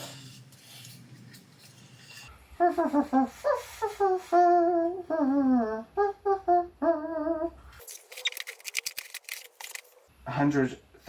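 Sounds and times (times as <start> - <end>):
person humming a tune: 2.6 - 7.6.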